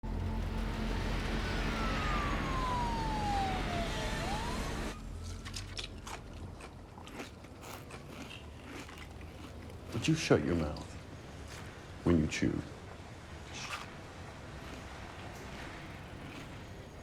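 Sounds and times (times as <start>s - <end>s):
siren gliding down in pitch: 0.0s - 6.0s
loud open-mouthed chewing: 5.4s - 11.8s, 13.5s - 17.0s.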